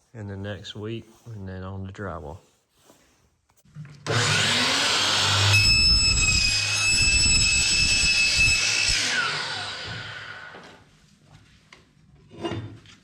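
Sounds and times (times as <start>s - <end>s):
power saw whining: 4.1s - 10.8s.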